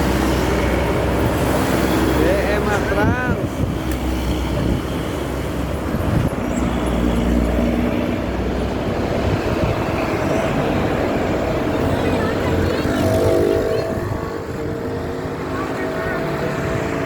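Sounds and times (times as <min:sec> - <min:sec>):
bus engine rumble: 0:00.0 - 0:17.0
road noise: 0:00.0 - 0:17.0.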